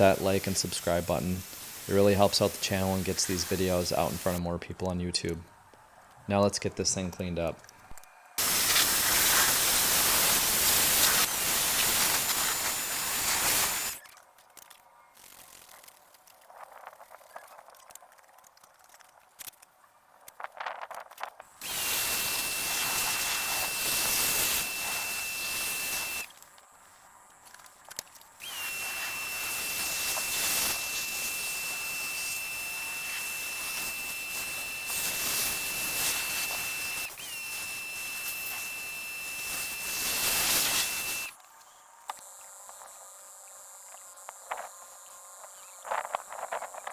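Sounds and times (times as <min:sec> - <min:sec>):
pressure washer spraying: 0:00.0 - 0:04.4, 0:08.4 - 0:14.0, 0:21.6 - 0:26.3, 0:28.4 - 0:41.3.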